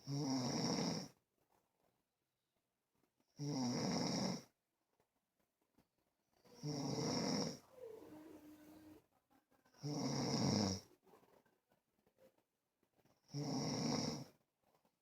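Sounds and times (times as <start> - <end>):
person snoring: 0.0 - 1.1, 3.4 - 4.4, 6.5 - 8.9, 9.8 - 10.9, 13.3 - 14.3.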